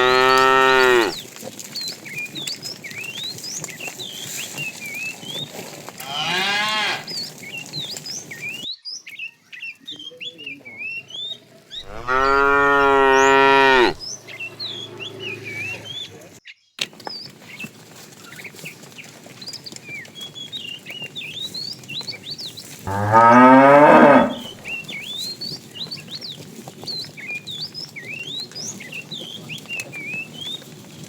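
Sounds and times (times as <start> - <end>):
cattle mooing: 0.0 - 1.2, 6.0 - 7.1, 11.8 - 16.1, 22.9 - 24.8.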